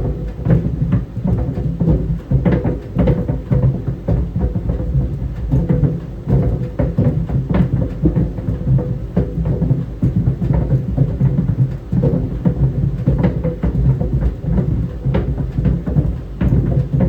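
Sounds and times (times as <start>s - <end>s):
clothes dryer drum rumbling: 0.0s - 17.0s.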